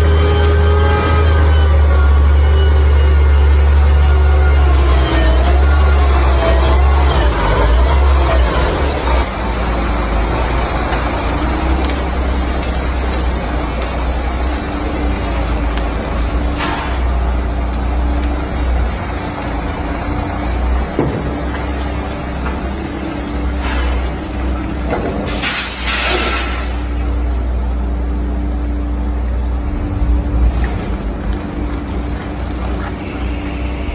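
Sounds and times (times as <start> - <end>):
heavy truck rumbling: 0.0 - 33.9
air brake hisses: 25.3 - 26.6.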